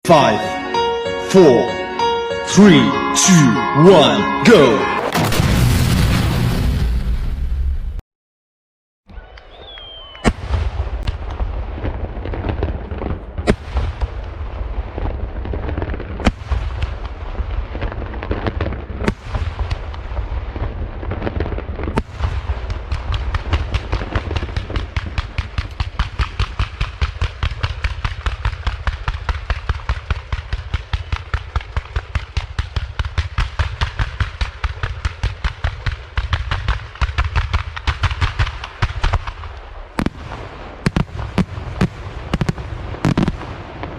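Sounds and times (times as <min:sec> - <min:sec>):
firework crackle: 0:09.8 - 0:43.9
sharp firework bangs: 0:10.2 - 0:43.9.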